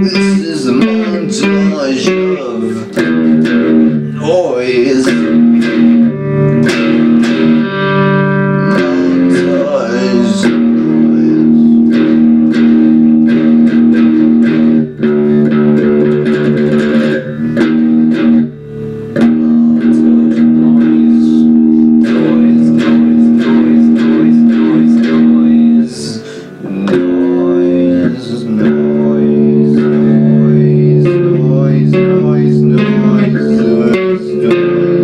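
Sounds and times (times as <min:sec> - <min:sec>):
electric guitar rock riff: 0:00.0 - 0:35.0.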